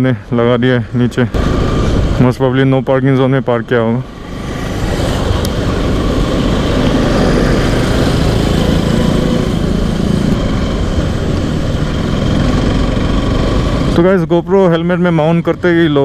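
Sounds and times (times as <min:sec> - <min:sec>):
wind rush on microphone: 0:01.4 - 0:02.8, 0:04.0 - 0:14.0
motorcycle engine running: 0:04.2 - 0:15.9.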